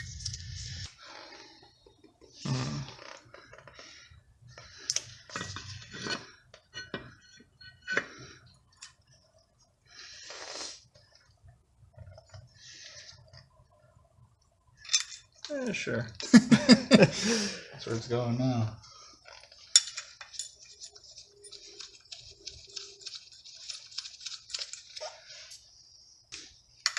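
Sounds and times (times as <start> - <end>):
metal tools clinking: 14.8 - 15.4, 19.4 - 25.6.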